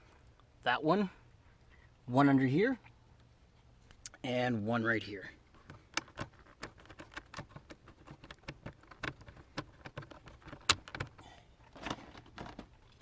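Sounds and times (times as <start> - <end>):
hand tools clicking on plastic trim: 5.7 - 11.2.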